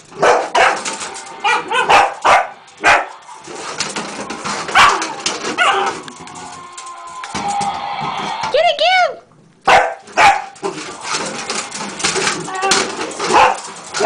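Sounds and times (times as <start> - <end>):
dog barking: 0.2 - 0.8, 1.4 - 3.1, 4.8 - 5.0, 9.7 - 10.6, 13.3 - 13.6.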